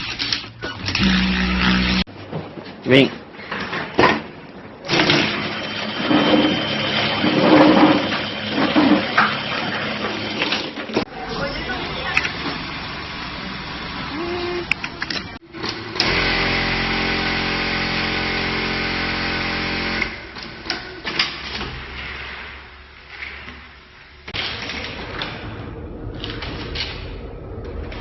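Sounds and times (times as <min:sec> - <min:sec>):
sewing machine whirring: 0:11.9 - 0:20.2.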